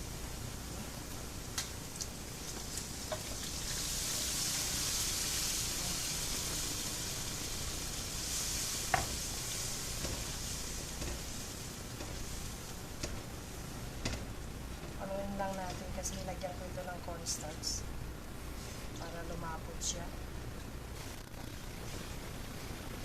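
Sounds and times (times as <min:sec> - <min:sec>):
meat sizzling in a hot pan: 0:00.1 - 0:14.4.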